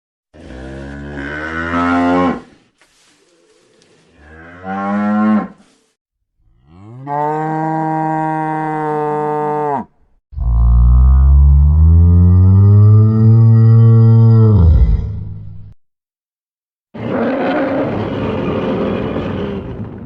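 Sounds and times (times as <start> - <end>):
monster roars: 10.4 - 15.2.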